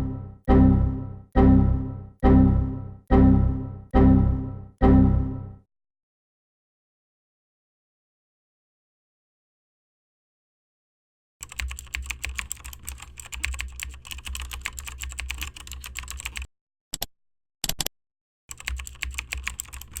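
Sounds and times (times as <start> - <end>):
computer keyboard typing: 11.4 - 16.5, 18.6 - 20.0.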